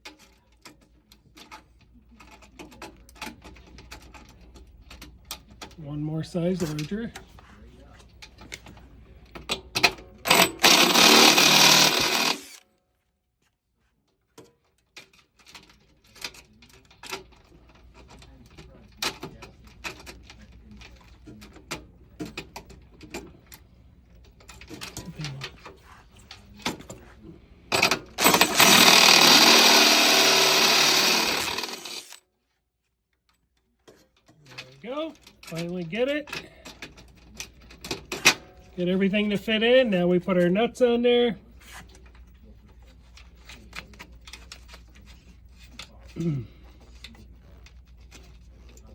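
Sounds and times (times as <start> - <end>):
power drill drilling: 10.3 - 12.6, 27.7 - 32.2.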